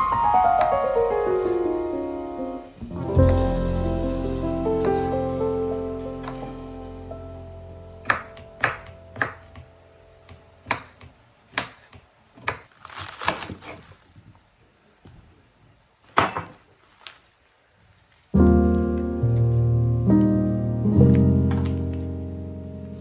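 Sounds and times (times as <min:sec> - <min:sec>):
soft piano music: 0:00.0 - 0:10.8, 0:18.4 - 0:23.0.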